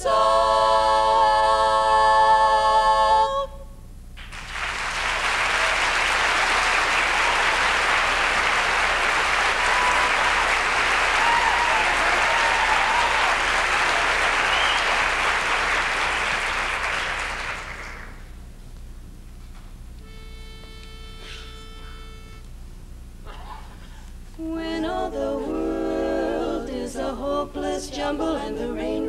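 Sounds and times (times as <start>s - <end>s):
audience applauding: 4.2s - 18.3s
faint whistles: 14.4s - 15.0s.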